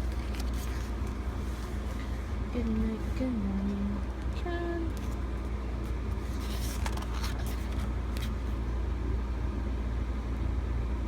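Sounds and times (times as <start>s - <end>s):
paper cards rustling: 0.0s - 2.8s, 4.9s - 8.6s
steady low rumble: 0.0s - 11.0s.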